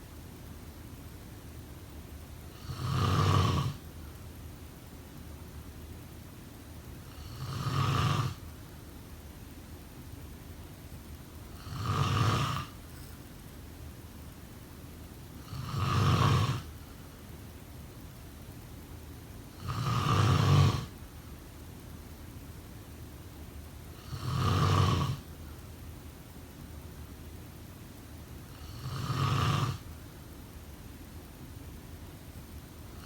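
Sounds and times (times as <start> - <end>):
person snoring: 2.6 - 3.8, 7.1 - 8.4, 11.6 - 12.8, 15.4 - 16.7, 19.6 - 20.9, 24.0 - 25.3, 28.5 - 29.9.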